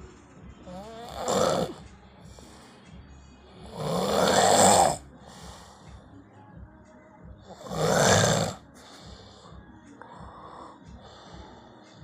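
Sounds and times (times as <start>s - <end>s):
man snoring: 0.6s - 2.6s, 3.5s - 6.0s, 7.4s - 11.7s.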